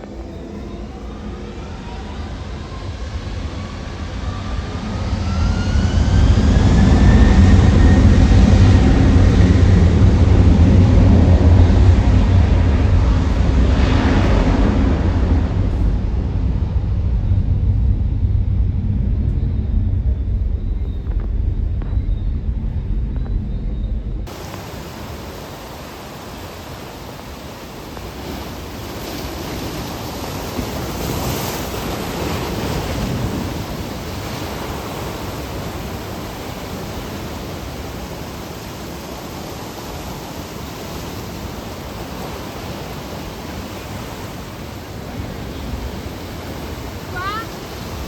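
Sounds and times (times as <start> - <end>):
sea surf washing in: 0.0 - 19.2, 24.3 - 48.0
wave breaking: 0.0 - 21.9, 24.2 - 48.0
low rumble: 0.0 - 29.2
wind on microphone: 0.0 - 48.0.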